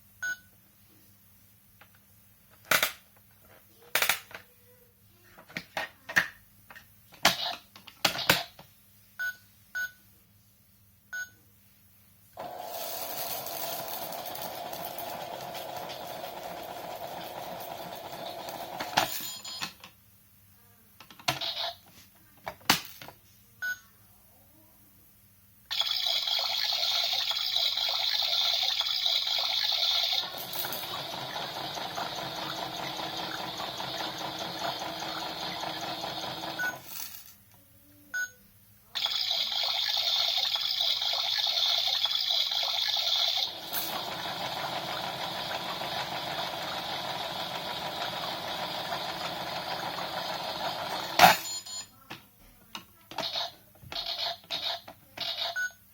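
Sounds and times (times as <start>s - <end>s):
toy washing machine whirring: 12.4s - 19.7s, 25.7s - 36.8s, 39.0s - 51.8s, 53.1s - 55.8s.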